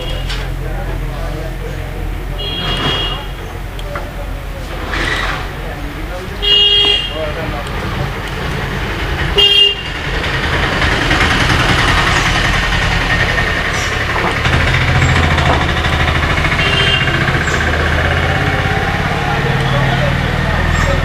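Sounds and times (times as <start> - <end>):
road traffic: 0.0 - 21.0
vehicle horn toots: 2.4 - 3.4, 6.4 - 7.3, 9.4 - 10.0, 16.4 - 17.6.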